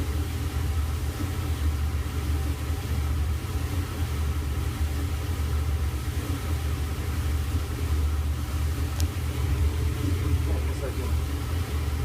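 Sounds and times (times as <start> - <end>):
dryer drum rumbling: 0.0 - 12.0.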